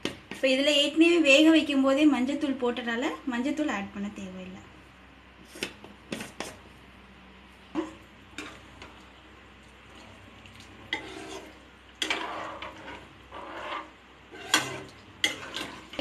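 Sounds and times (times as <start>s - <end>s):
spoon scraping and clinking in pot: 10.9s - 16.0s.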